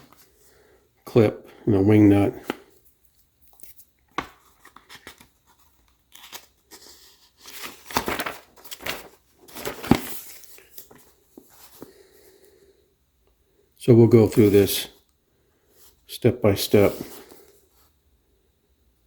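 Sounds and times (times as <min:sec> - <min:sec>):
wrapping rustling and crinkling: 0:03.5 - 0:11.9.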